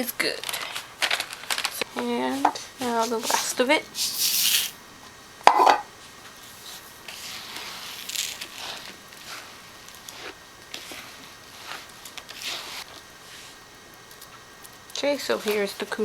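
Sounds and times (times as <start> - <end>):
soft crunching and scraping: 0.4 - 4.8, 5.6 - 15.7
seed pouring into a bowl: 3.0 - 4.8, 6.6 - 9.5.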